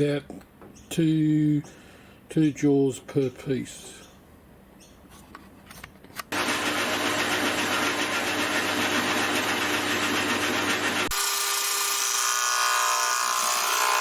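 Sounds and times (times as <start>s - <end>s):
lathe motor running: 6.4s - 14.0s.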